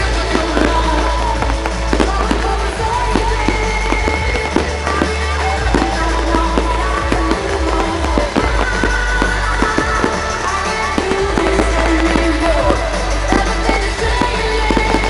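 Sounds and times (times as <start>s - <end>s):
fireworks bangs and crackles: 0.0s - 15.0s
pop music with heavy bass: 0.0s - 15.0s.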